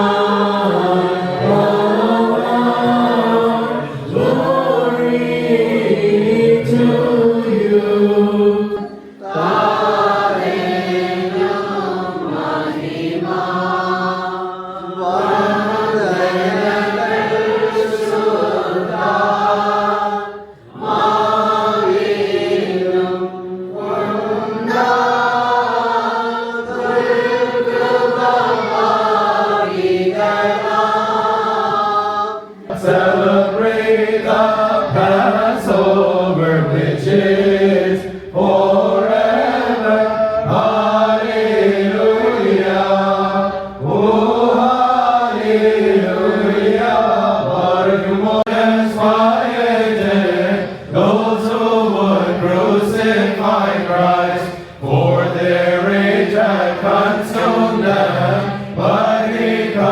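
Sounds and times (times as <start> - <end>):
voices chanting a hymn: 0.0 - 59.9
breaths: 8.9 - 9.2.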